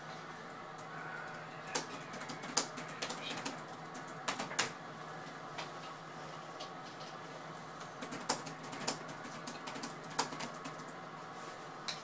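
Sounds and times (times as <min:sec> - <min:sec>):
computer keyboard typing: 0:01.7 - 0:04.8, 0:08.0 - 0:11.0.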